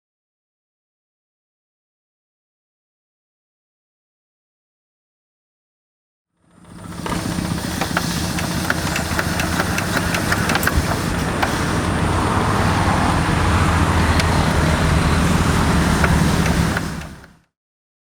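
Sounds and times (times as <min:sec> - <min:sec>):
diesel engine running: 0:06.4 - 0:17.4
sharp clicks and clatter: 0:07.0 - 0:12.8, 0:13.8 - 0:17.4.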